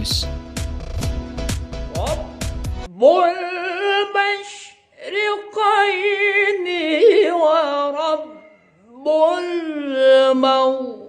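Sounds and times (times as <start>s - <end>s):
man reciting melodically: 0.0s - 0.3s.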